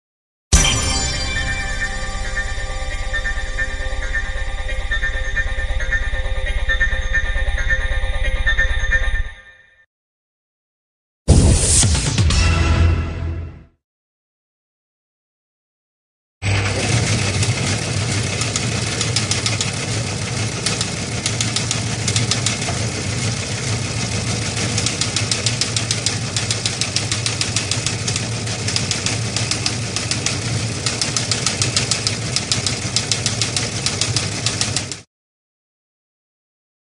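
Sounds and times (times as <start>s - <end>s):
low motor hum: 16.4s - 34.9s
machine clattering: 16.7s - 35.0s.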